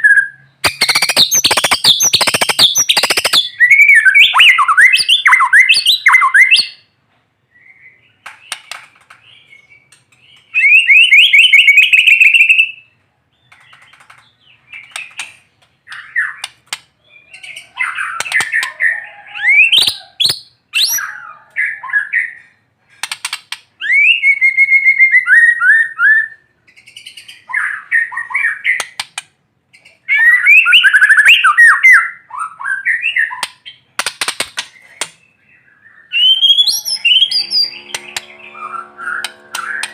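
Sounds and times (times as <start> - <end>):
songbird singing varied phrases: 34.8 - 39.9.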